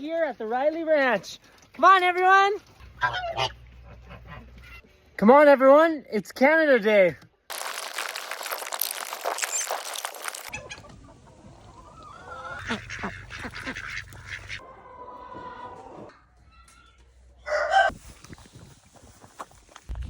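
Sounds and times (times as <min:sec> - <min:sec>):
geese honking: 0:10.5 - 0:14.6.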